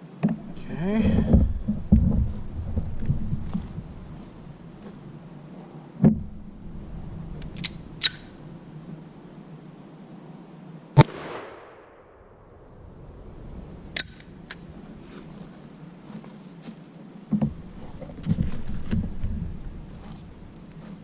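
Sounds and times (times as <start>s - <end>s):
handling knocks: 0.2s - 5.1s, 6.0s - 8.0s, 17.3s - 20.5s
sharp clicks: 7.4s - 8.4s, 14.0s - 14.7s
pistol shot: 11.0s - 12.2s.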